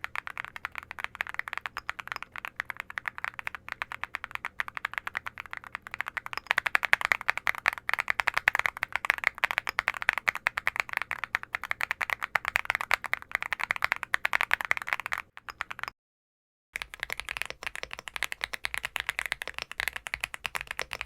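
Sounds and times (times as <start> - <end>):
fast mechanical keyboard typing: 0.0 - 15.9, 16.8 - 21.0.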